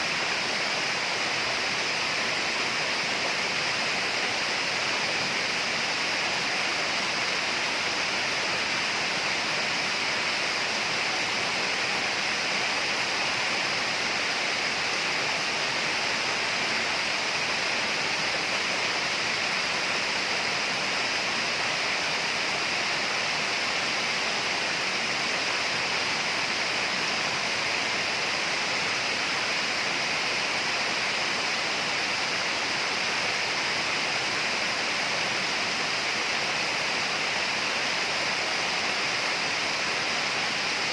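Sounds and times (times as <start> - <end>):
flowing water rushing: 0.0 - 40.9.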